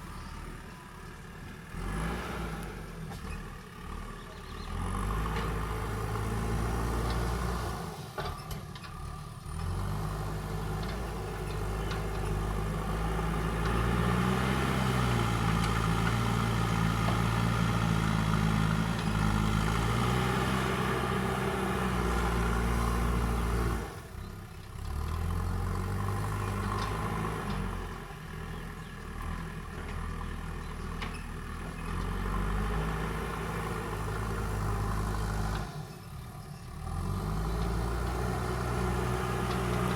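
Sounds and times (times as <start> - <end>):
backhoe diesel engine working: 0.0 - 39.9.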